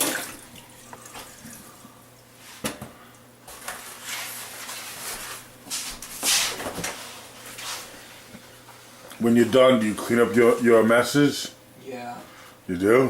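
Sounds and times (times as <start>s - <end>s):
scraping and shuffling: 3.5s - 9.3s.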